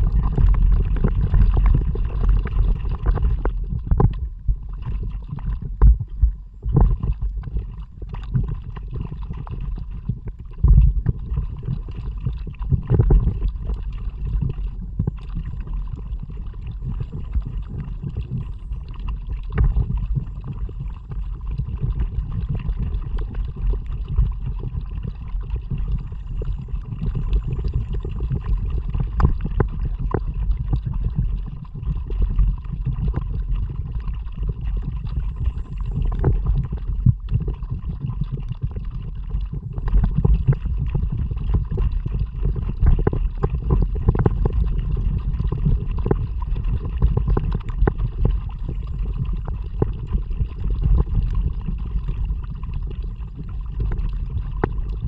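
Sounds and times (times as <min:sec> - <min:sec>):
wind rumble on microphone: 0:00.0 - 0:55.0.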